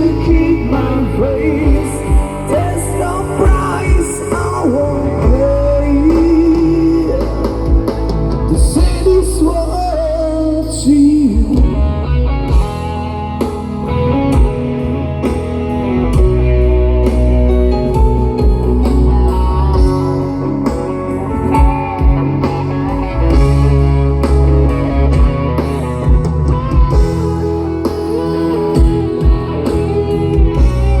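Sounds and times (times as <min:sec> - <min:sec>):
person singing: 0:00.0 - 0:12.0, 0:17.9 - 0:24.4, 0:26.2 - 0:31.0
bass: 0:00.0 - 0:31.0
drums: 0:00.0 - 0:31.0
electric guitar: 0:00.0 - 0:31.0.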